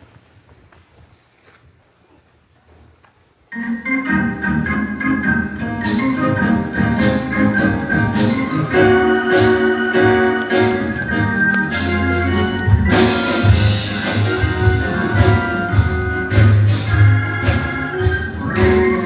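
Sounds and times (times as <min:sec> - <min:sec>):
organ chords: 0:03.5 - 0:19.0
sharp percussion hits: 0:05.8 - 0:19.0.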